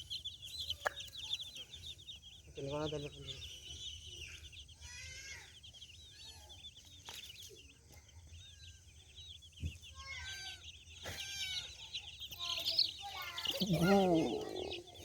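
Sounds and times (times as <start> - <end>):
baby chicks peeping: 0.0 - 15.0
hen clucking: 9.6 - 15.0.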